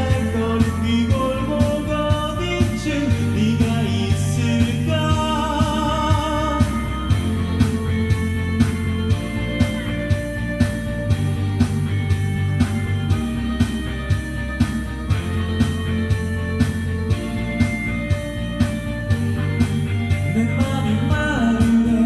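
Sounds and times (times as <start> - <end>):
person singing with vibrato: 0.0 - 7.6, 20.3 - 22.0
rock backing track: 0.0 - 22.0.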